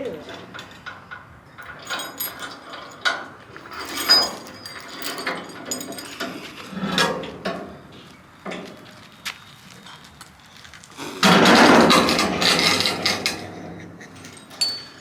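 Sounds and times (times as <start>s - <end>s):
hard objects knocking and clanking: 11.2s - 15.0s.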